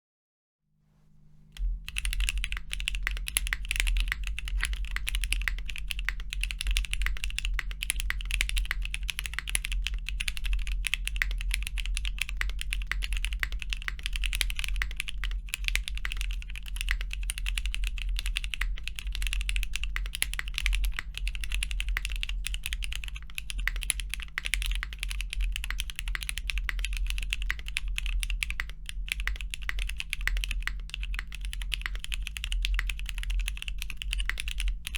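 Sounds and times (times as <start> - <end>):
steady low hum: 0.8 - 34.9
mechanical keyboard typing: 1.8 - 34.9.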